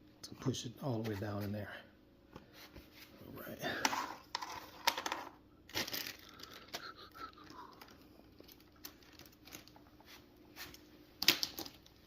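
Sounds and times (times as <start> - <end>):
packaging rustling: 3.9 - 6.8, 7.4 - 10.0.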